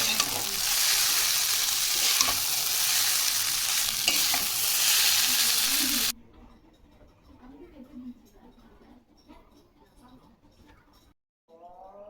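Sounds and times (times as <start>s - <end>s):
noodles sizzling in a pan: 0.0s - 6.1s
spatula clinking against pan: 0.0s - 6.1s.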